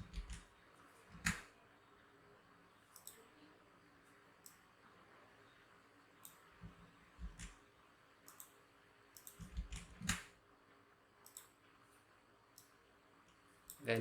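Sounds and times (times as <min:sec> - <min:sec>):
computer mouse and keyboard clicks: 0:00.0 - 0:00.5, 0:01.1 - 0:01.5, 0:02.9 - 0:03.2, 0:06.2 - 0:07.6, 0:08.2 - 0:10.3, 0:11.2 - 0:11.6.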